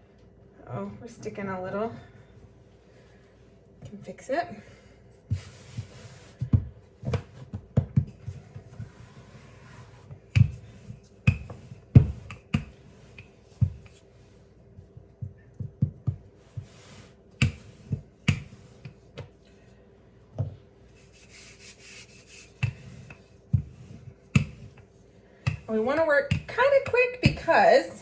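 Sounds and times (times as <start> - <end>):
soft rubbing hiss: 20.8 - 24.1
rolling pin knocking on table: 24.4 - 24.8, 25.5 - 27.5.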